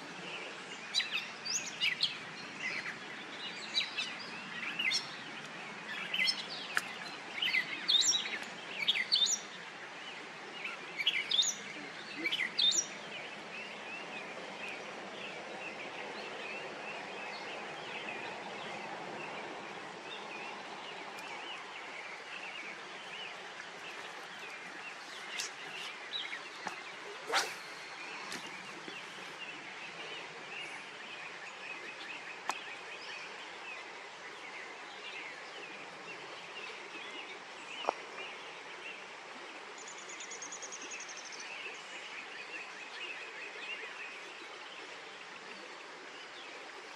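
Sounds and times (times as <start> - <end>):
small birds chirping: 0.0 - 33.6
steady outdoor hiss: 0.0 - 46.9.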